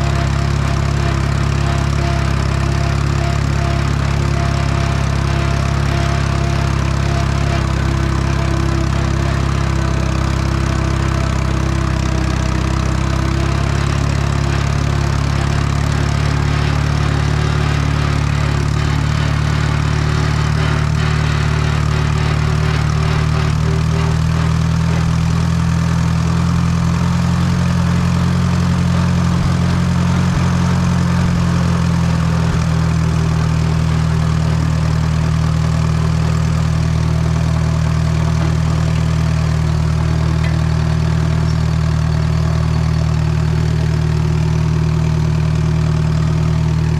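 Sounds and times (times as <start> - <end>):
tractor engine running: 0.0 - 46.9.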